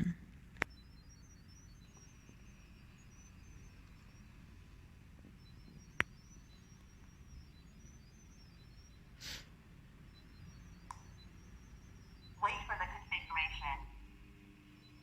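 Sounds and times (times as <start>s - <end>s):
low steady hum: 0.0s - 15.0s
breath-like hiss: 9.2s - 9.5s.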